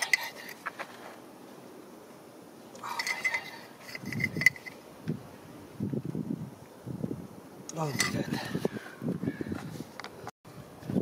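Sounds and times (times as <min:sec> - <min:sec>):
metal hand tools clinking: 0:02.8 - 0:04.8, 0:07.8 - 0:08.4.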